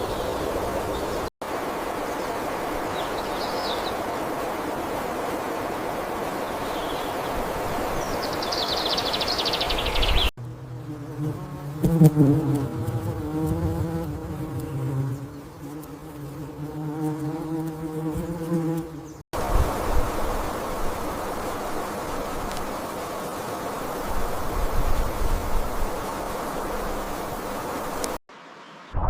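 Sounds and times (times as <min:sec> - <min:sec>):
rushing outdoor noise: 0:00.0 - 0:10.6, 0:19.0 - 0:29.0
flying insect buzzing: 0:09.8 - 0:28.2.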